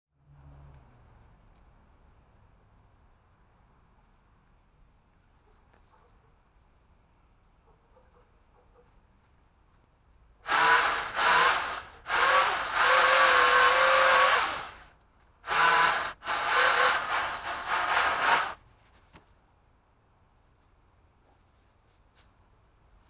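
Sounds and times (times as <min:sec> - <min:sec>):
pole saw motor revving: 0:10.5 - 0:14.9, 0:15.5 - 0:18.6.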